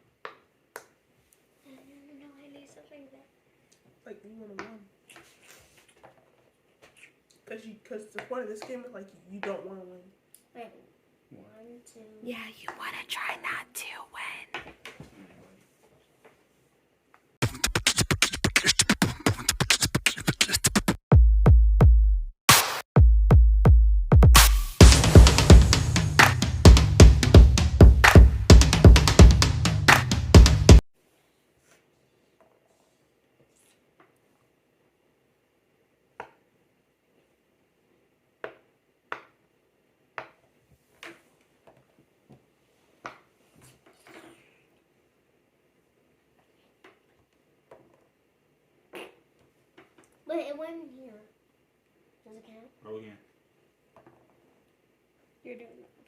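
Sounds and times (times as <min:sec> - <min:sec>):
rapid-fire percussion hits: 0:17.4 - 0:30.8
booming bass drum hits: 0:23.0 - 0:30.8.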